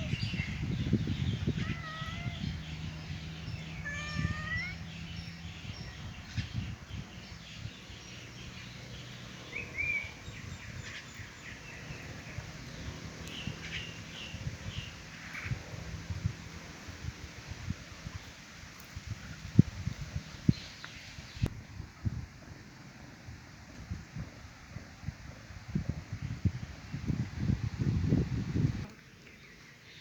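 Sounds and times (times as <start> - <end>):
short high animal calls: 3.8 - 4.8.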